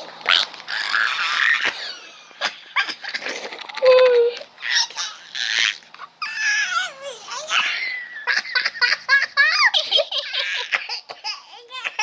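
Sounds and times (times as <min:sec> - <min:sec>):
high-pitched laughter: 0:07.5 - 0:11.1.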